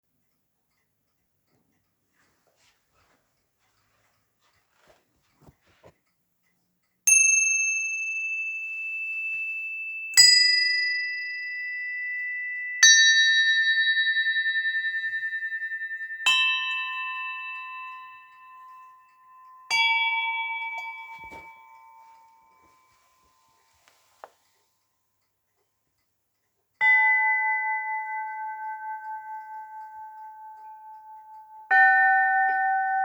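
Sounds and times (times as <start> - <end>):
small church bells struck: 7.4 - 19.0, 26.8 - 33.0.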